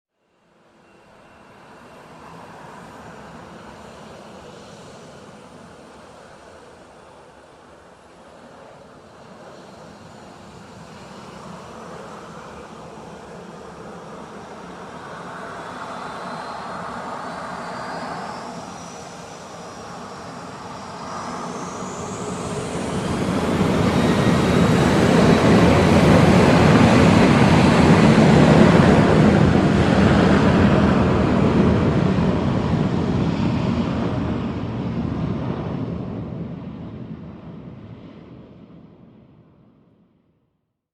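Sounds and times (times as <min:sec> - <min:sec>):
jet airliner taking off: 0:00.6 - 0:39.6.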